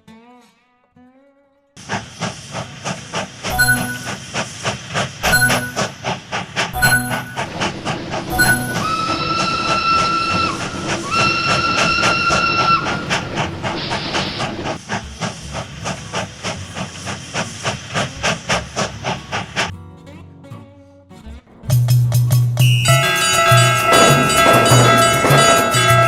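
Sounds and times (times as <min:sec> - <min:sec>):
train wheels clattering over rail joints: 0:04.1 - 0:19.7, 0:23.0 - 0:26.0
train whistle blasts: 0:08.3 - 0:13.1, 0:22.8 - 0:26.0.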